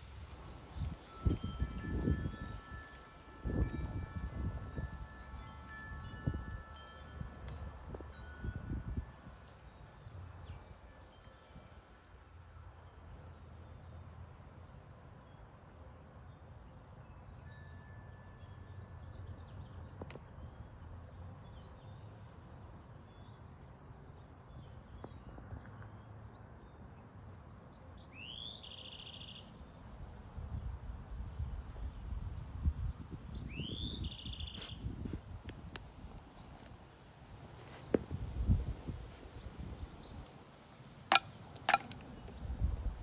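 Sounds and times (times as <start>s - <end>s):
small birds chirping: 33.1s - 36.7s.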